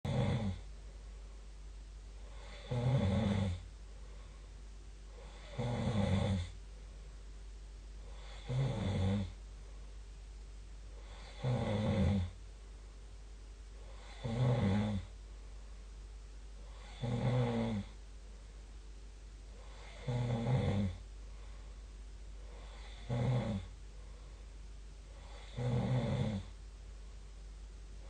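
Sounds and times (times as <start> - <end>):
person snoring: 0.1 - 0.6, 2.2 - 3.6, 5.1 - 6.6, 8.0 - 9.4, 11.0 - 12.4, 13.8 - 15.1, 16.6 - 18.0, 19.6 - 21.0, 22.5 - 23.7, 25.1 - 26.5.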